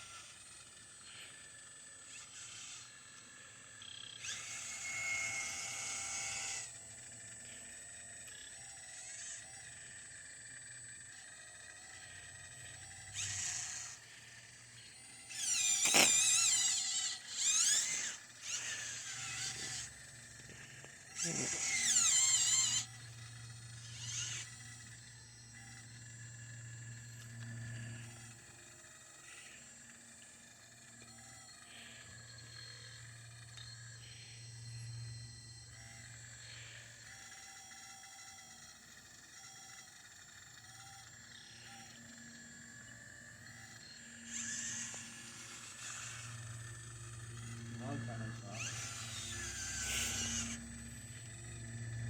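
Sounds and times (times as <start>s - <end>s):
hydraulic pump whining: 12.1s - 28.6s, 39.6s - 52.0s.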